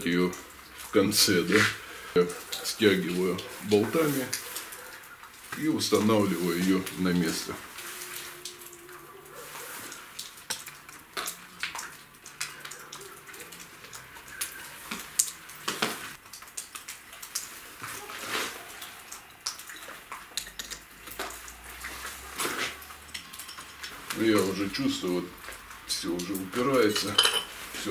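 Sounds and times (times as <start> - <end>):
long scraping: 7.5 - 10.0.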